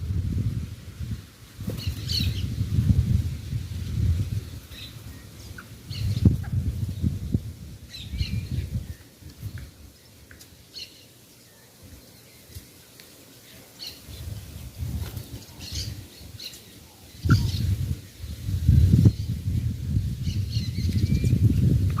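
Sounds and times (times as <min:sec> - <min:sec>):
wings flapping: 0:01.6 - 0:02.4, 0:14.8 - 0:15.6
birds chirping: 0:04.6 - 0:07.3, 0:07.9 - 0:19.4, 0:20.2 - 0:22.0.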